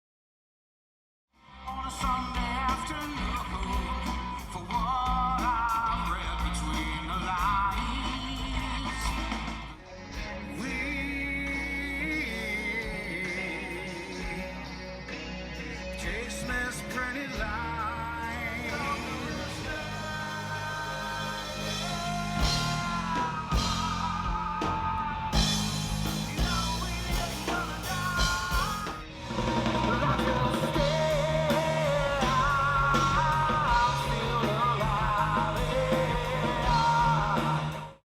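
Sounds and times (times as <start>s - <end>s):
grunge rock music with vocals: 1.4s - 38.0s.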